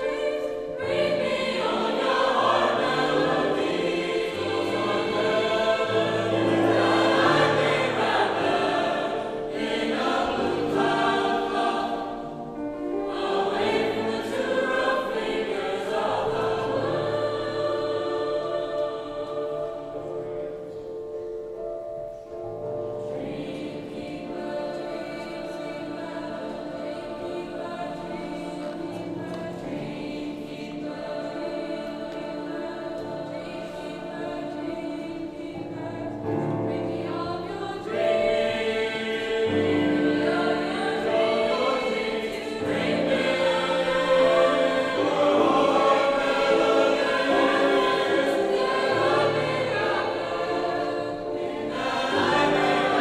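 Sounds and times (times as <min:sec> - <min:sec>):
choir singing: 0:00.0 - 0:53.0.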